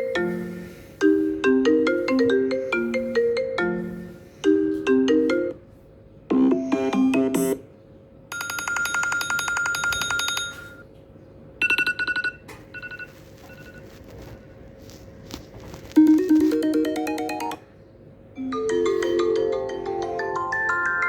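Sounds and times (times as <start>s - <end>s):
ringtone melodies: 0.0s - 5.6s, 6.3s - 7.6s, 16.0s - 17.7s, 18.4s - 21.0s.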